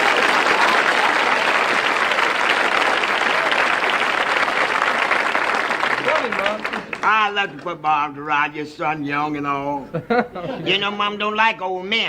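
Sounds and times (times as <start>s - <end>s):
audience applauding: 0.0s - 8.0s.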